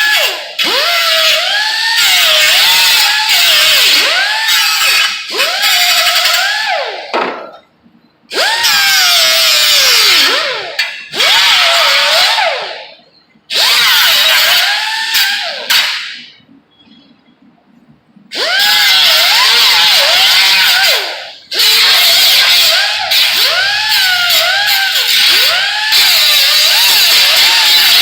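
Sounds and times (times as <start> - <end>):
power grinder cutting sheet metal: 18.4 - 28.0.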